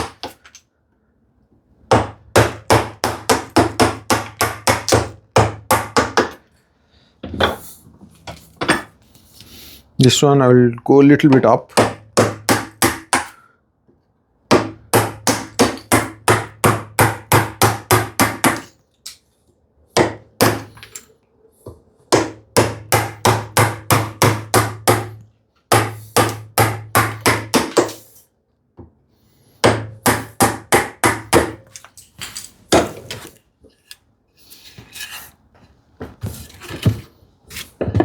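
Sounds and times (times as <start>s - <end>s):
mallet striking a chisel: 14.5s - 18.7s.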